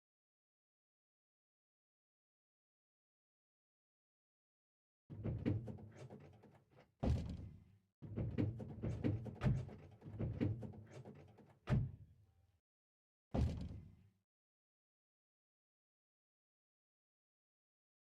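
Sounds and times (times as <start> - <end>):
knocks thumps and rattles: 5.1 - 12.0, 13.4 - 13.9.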